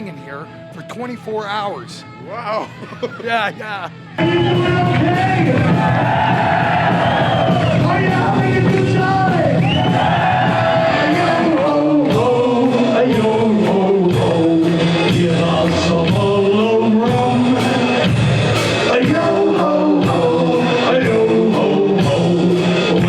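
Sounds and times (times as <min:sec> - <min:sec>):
crowd shouting: 0:02.4 - 0:13.5
heavy metal band playing live: 0:03.1 - 0:23.0
lead vocal singing: 0:04.2 - 0:23.0.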